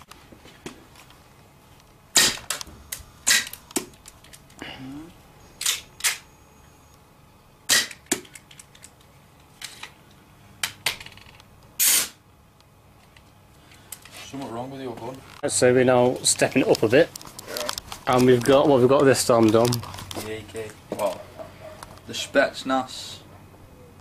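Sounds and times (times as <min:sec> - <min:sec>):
bb pistol shots: 0:02.1 - 0:02.6, 0:03.2 - 0:03.9, 0:07.7 - 0:08.3.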